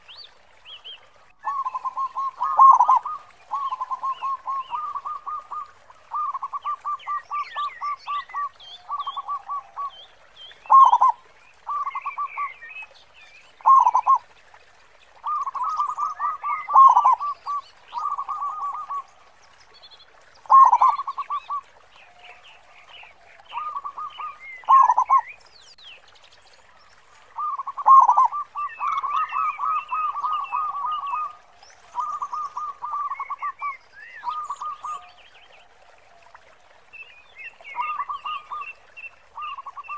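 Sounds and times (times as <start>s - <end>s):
dove cooing: 1.5s - 7.2s, 15.3s - 19.1s, 23.5s - 25.2s, 27.4s - 33.4s.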